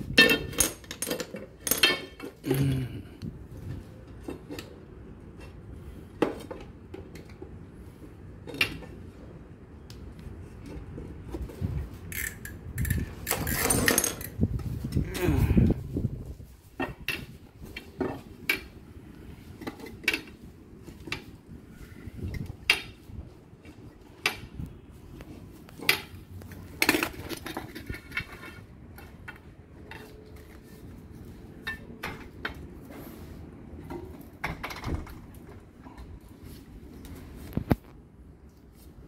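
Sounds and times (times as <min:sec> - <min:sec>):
tools and pipe parts clinking: 0:00.0 - 0:02.4, 0:10.6 - 0:15.0, 0:19.5 - 0:21.3, 0:25.7 - 0:36.2.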